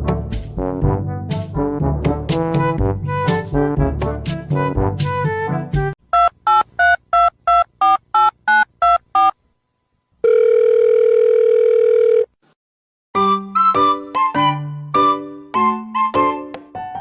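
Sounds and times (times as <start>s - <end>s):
steady telephone tone: 10.2s - 12.3s.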